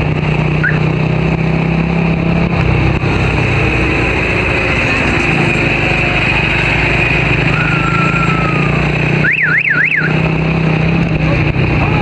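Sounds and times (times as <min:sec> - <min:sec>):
off-road vehicle engine running: 0:00.0 - 0:12.0
siren-like warble: 0:00.6 - 0:00.9, 0:07.4 - 0:10.3.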